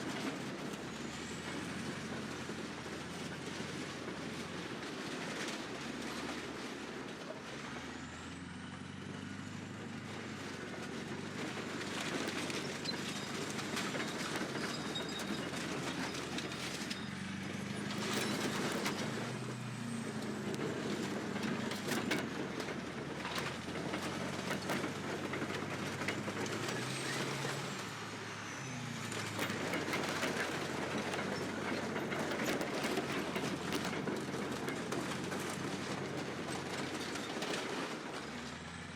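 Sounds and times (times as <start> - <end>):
bulldozer diesel engine running: 0.0 - 38.9
metal cracking and crunching: 10.9 - 28.2, 29.0 - 38.7.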